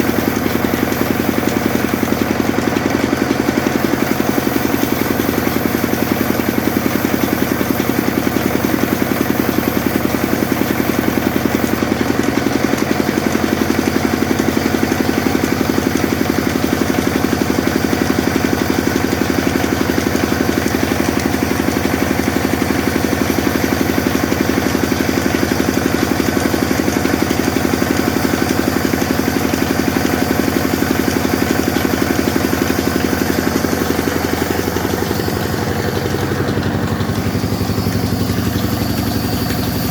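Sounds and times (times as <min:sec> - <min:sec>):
sawmill machine humming: 0:00.0 - 0:39.9.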